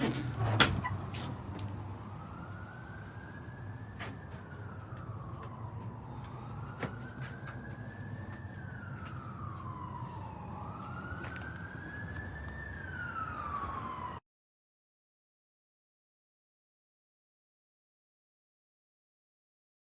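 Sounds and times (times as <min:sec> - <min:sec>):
emergency siren wailing: 0:00.3 - 0:14.2.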